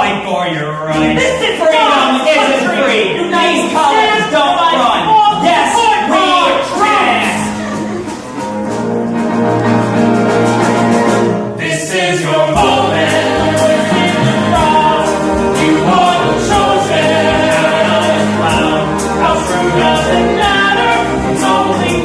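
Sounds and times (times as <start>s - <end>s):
small live pit band: 0.9s - 22.0s
drums keeping a beat: 6.6s - 11.7s, 12.5s - 22.0s
several voices singing together: 10.5s - 22.0s.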